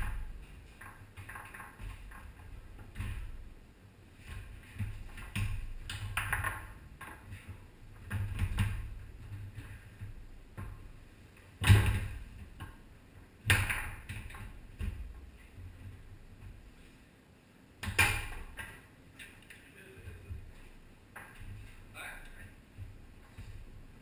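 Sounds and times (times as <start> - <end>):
foosball ball clacking: 0.0 - 3.4, 4.3 - 10.8
loud bangs on foosball table: 11.6 - 12.2.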